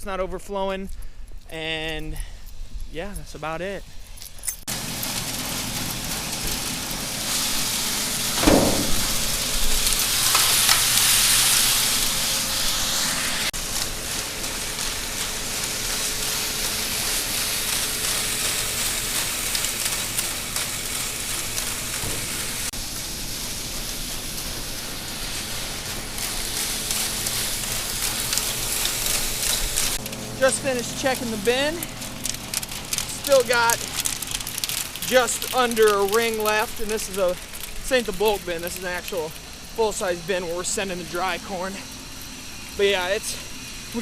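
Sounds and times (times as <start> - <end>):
grain kernels pouring: 4.7 - 41.7
motors humming: 4.7 - 44.0
thump: 8.4 - 9.2.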